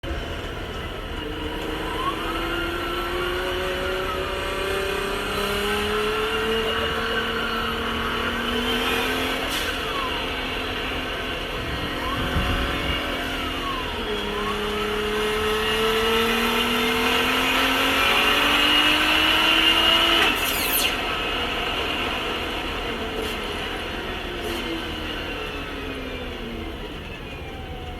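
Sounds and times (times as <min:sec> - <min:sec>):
turbocharged car engine accelerating: 0:00.0 - 0:27.9
turbo rushing sweep: 0:15.2 - 0:23.0.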